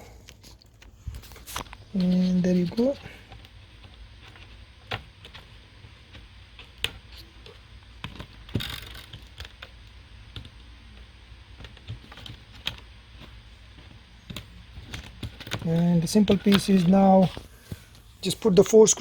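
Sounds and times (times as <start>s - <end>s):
plastic laptop parts clicking: 1.5s - 17.5s.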